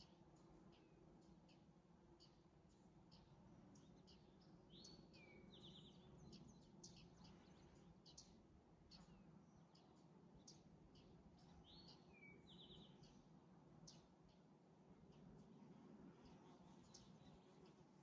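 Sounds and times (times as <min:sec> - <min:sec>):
low steady hum: 0:00.0 - 0:18.0
birds chirping: 0:16.2 - 0:18.0.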